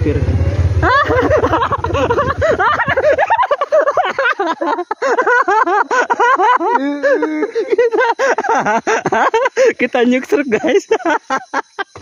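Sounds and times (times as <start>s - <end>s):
motorcycle engine running: 0.0s - 3.6s.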